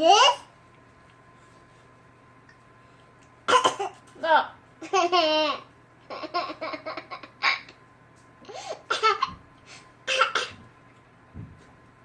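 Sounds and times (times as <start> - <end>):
child fake coughing: 3.5 - 4.0, 8.6 - 9.4, 10.1 - 10.6
child laughing: 4.8 - 7.8.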